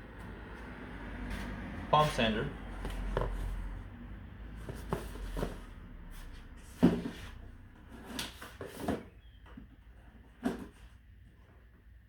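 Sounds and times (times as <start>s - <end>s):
knocks and handling noises: 4.6s - 5.8s, 6.4s - 11.0s.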